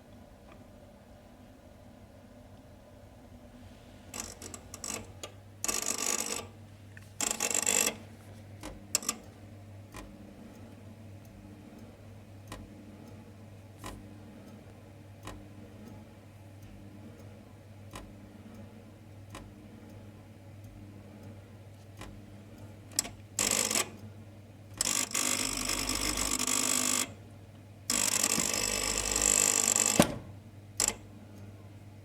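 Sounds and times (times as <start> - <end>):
steady low hum: 0.0 - 24.8
boiler grinding buzz: 27.8 - 30.1.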